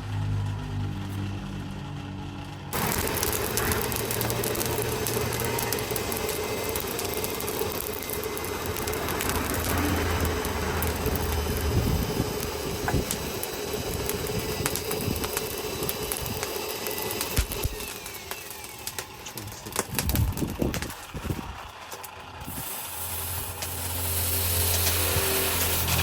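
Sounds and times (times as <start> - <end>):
machine motor running: 0.0 - 26.0.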